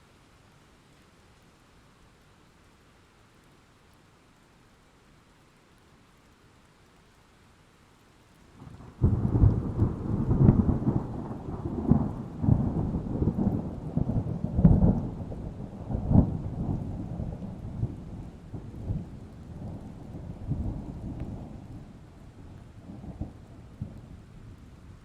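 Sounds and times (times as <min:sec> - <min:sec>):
thunder rumbling: 0:08.6 - 0:24.7.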